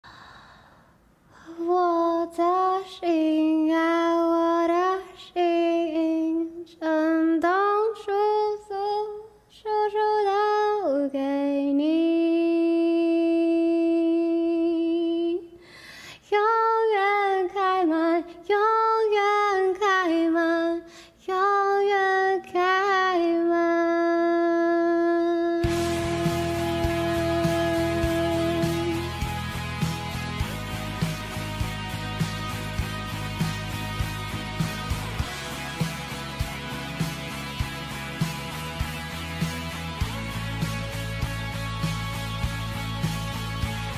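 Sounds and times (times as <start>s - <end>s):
person singing unaccompanied: 16.4s - 33.4s.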